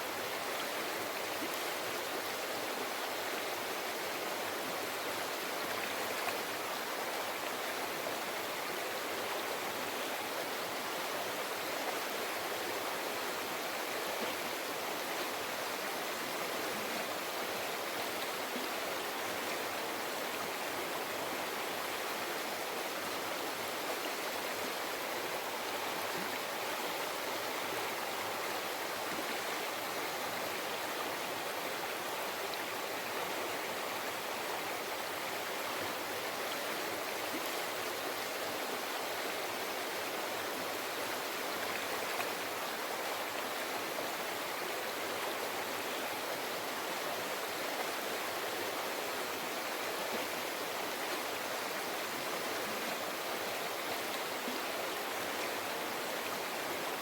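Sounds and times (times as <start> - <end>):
river water babbling over rocks: 0.0 - 57.0.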